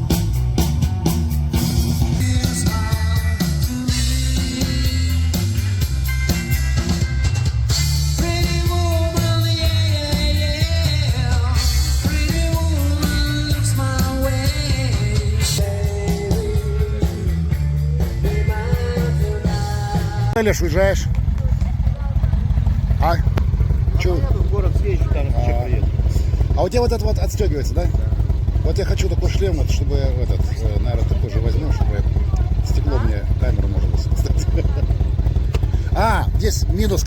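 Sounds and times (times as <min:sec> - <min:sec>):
rock song with singing: 0:00.0 - 0:26.7.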